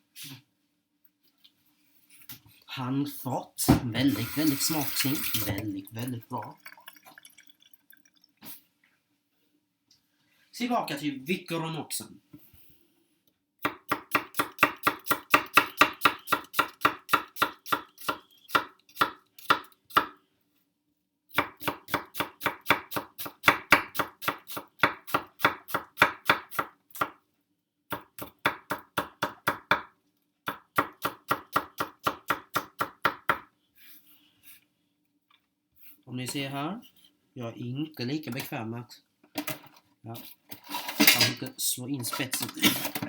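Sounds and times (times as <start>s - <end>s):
knife chopping on cutting board: 21.4s - 27.2s.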